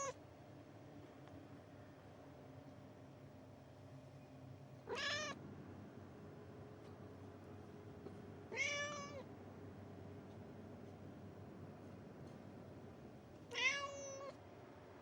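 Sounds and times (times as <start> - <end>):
cat meowing: 4.9 - 5.4, 8.5 - 9.2, 13.5 - 14.4.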